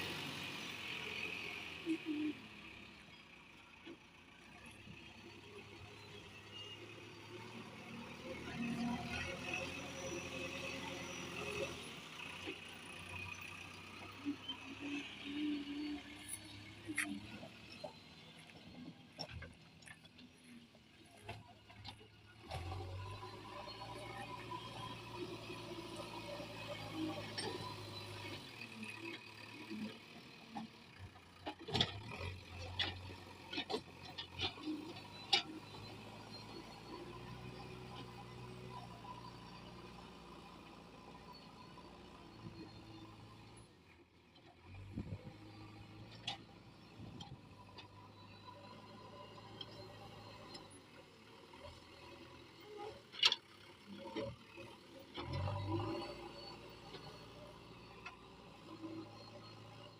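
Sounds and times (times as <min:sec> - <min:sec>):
faint diesel machinery hum: 0:00.0 - 0:59.9.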